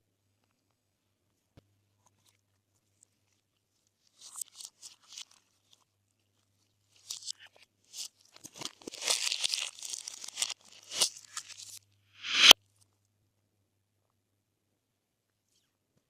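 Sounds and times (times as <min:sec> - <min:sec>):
slime crackling and popping: 0:08.5 - 0:11.4.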